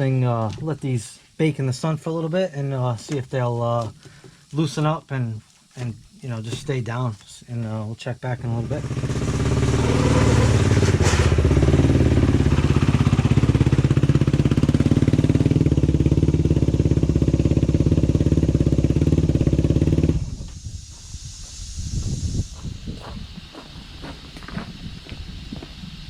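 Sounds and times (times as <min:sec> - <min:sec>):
atv engine at fast idle: 0:08.4 - 0:20.6.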